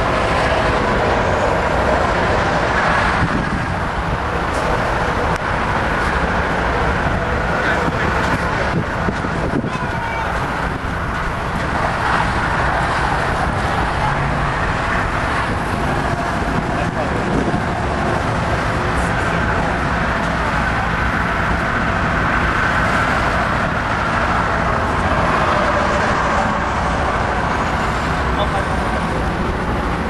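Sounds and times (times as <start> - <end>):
truck engines running: 0.0 - 30.0
crowd chatter: 6.7 - 21.3, 28.2 - 30.0.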